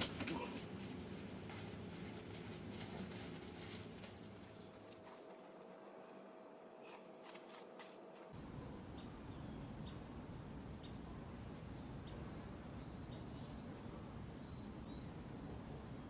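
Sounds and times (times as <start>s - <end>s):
low outdoor rumble: 0.0s - 16.0s
small birds chirping: 6.7s - 16.0s.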